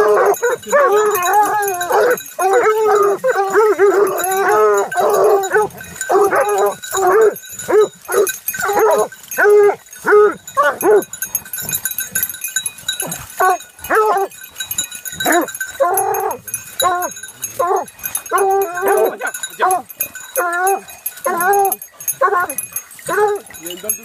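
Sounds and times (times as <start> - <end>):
dog whining and yelping: 0.0 - 12.2, 13.0 - 23.6.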